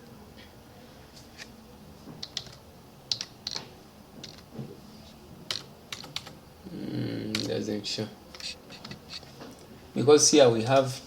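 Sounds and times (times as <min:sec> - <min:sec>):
keyboard keys clicking: 0:02.2 - 0:04.4, 0:05.5 - 0:06.4.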